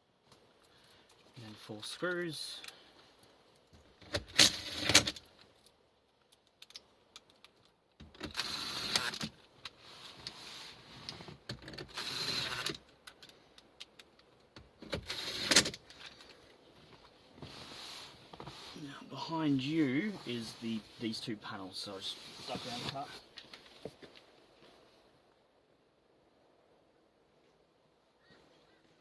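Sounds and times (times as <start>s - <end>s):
small clicks and handling noises: 0.3s - 10.4s, 11.0s - 17.2s, 22.6s - 24.3s.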